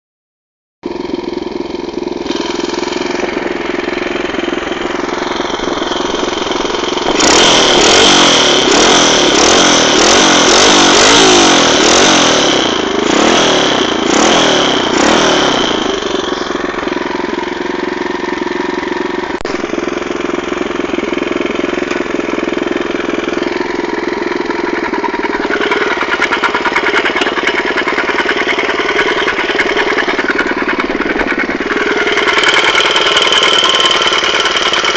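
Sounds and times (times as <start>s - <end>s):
motorcycle engine idling and revving: 0.8s - 34.9s
fast fine ticking: 24.8s - 34.9s.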